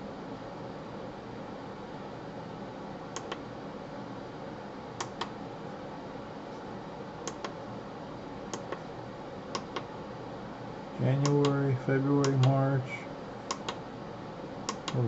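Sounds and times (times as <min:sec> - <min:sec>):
push button clicking: 0:11.2 - 0:11.6.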